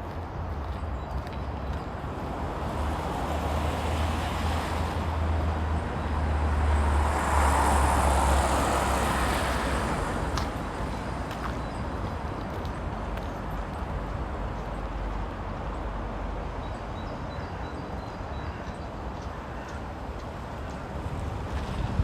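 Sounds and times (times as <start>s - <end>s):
wind rumbling on microphone: 20.6s - 22.0s.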